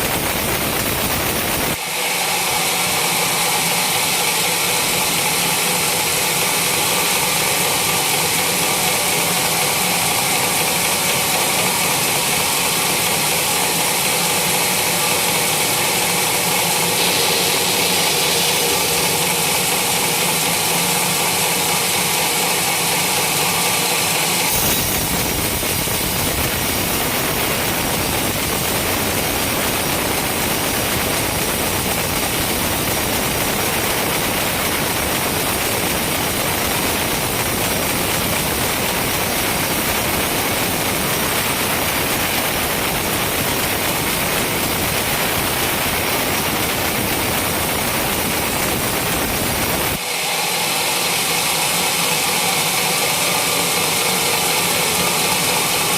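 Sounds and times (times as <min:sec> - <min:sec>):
sawmill machine running: 0:00.0 - 0:55.9
saw cutting through trunk: 0:01.6 - 0:45.8.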